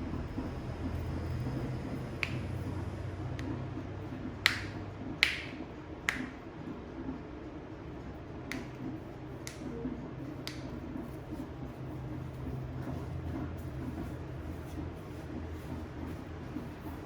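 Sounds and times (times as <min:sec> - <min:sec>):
low steady hum: 0:00.0 - 0:17.0
hands snapping: 0:02.2 - 0:02.6, 0:04.4 - 0:06.4, 0:08.5 - 0:08.8, 0:09.4 - 0:09.7, 0:10.4 - 0:10.8.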